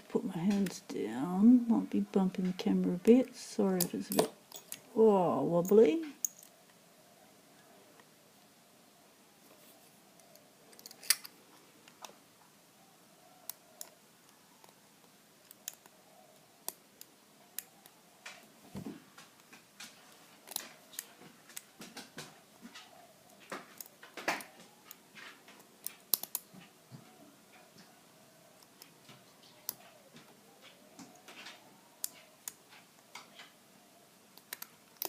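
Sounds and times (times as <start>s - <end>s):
lock pick clicking in padlock: 10.8s - 11.3s, 26.0s - 26.4s.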